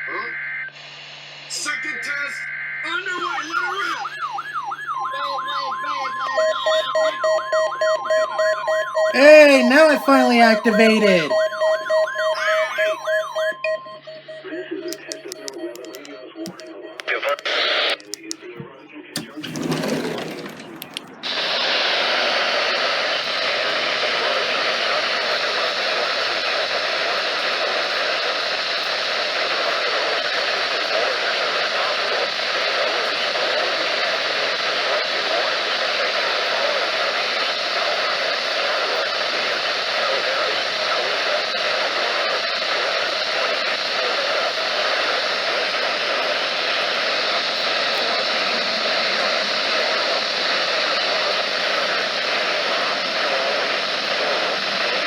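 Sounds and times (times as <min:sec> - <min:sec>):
radio static hiss: 0:21.2 - 0:55.0.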